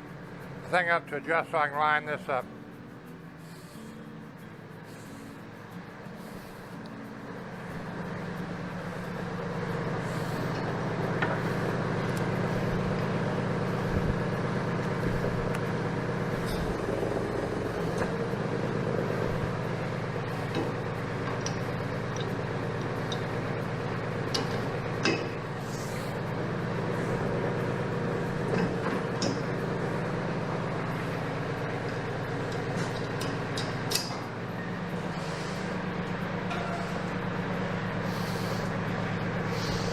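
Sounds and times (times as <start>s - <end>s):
tractor diesel engine running: 0.0s - 39.9s
metal clicks and clanks: 19.4s - 26.3s, 28.3s - 29.8s, 31.1s - 34.5s, 35.7s - 37.3s.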